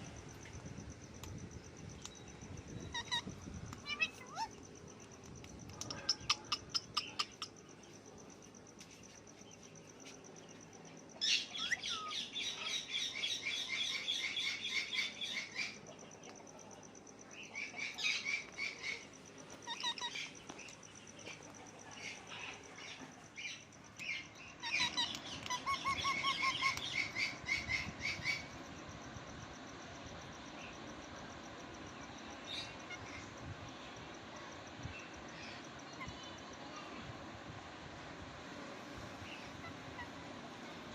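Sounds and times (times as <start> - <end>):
parrot chirping: 2.1 - 5.0, 5.8 - 7.6, 17.5 - 28.5.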